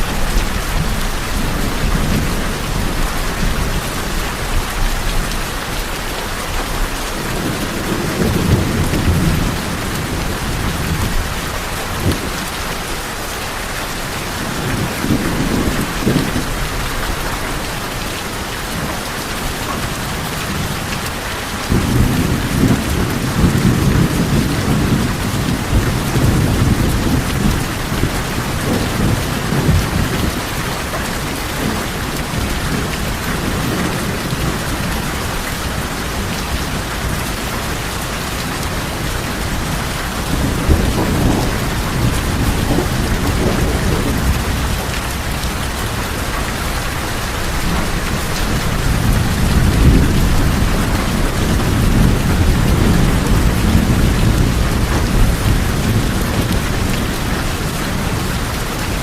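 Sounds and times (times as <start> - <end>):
rain on a tin roof: 0.0 - 59.0
low rolling thunder: 6.7 - 12.9, 14.4 - 17.8, 21.6 - 59.0.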